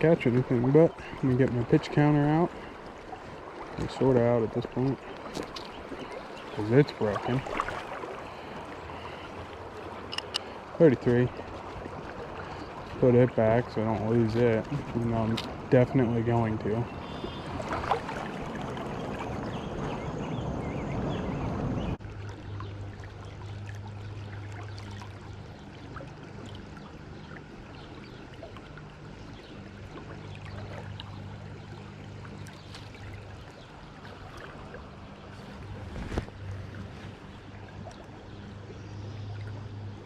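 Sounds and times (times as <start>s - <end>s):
low steady hum: 0.0s - 40.0s
stream water flowing: 0.0s - 40.0s
small drip-like ticks: 4.8s - 6.2s, 10.0s - 10.6s.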